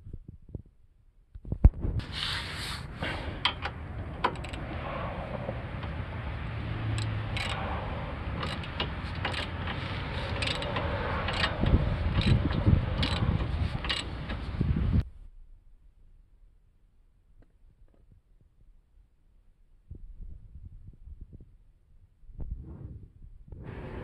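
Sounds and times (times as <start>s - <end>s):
low rumble: 1.6s - 17.0s
mechanical clicking and rattling: 3.4s - 4.8s, 6.9s - 14.6s.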